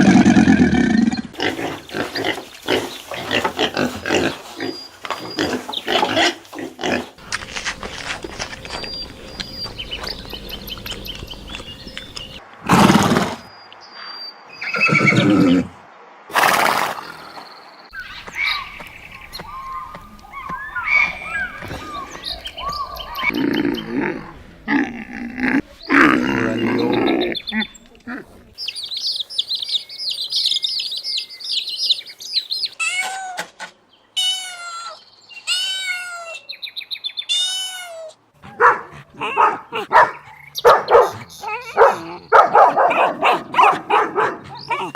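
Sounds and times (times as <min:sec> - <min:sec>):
birds chirping: 0:00.0 - 0:44.9
horse neighing: 0:14.6 - 0:15.8.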